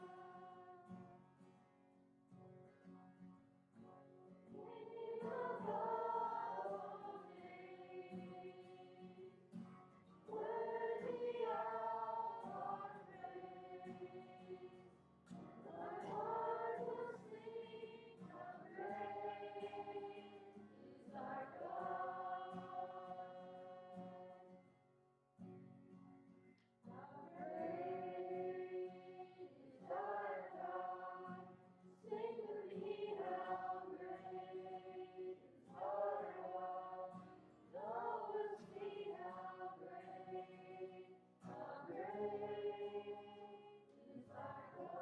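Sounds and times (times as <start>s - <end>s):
group of voices singing: 4.6s - 9.4s, 10.2s - 14.9s, 15.6s - 24.5s, 26.9s - 45.0s.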